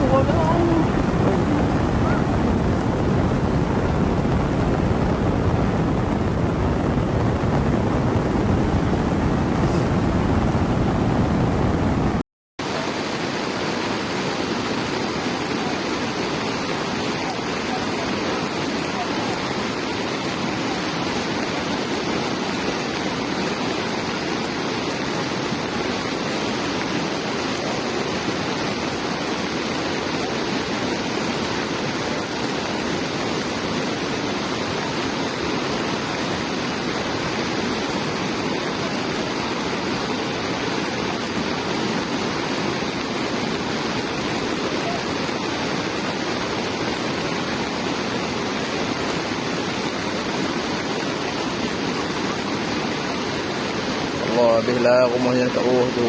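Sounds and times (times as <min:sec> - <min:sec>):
floodwater rushing: 0:00.0 - 0:56.0.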